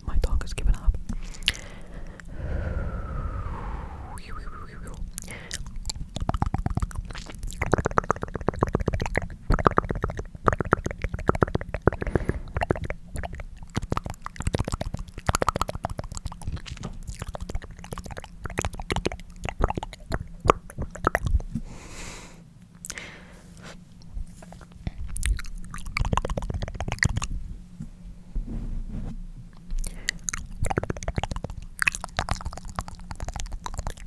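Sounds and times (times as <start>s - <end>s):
soft breath hiss: 0.0s - 6.0s, 11.7s - 13.0s, 21.5s - 24.8s
tongue clicking: 1.1s - 2.5s, 4.0s - 21.6s, 24.4s - 27.3s, 29.8s - 34.0s.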